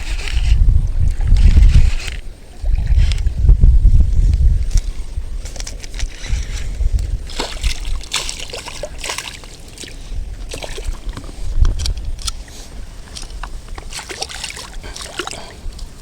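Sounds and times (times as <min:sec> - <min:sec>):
wind rumbling on microphone: 0:00.0 - 0:16.0
water splashing: 0:07.2 - 0:16.0.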